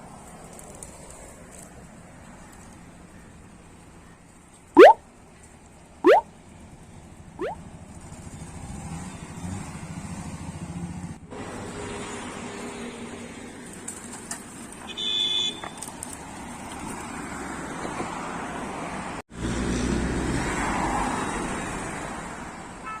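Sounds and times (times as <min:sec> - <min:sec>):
vehicle engine rumble: 0:00.0 - 0:14.9
road traffic: 0:00.0 - 0:23.0
short high beep: 0:04.8 - 0:05.0.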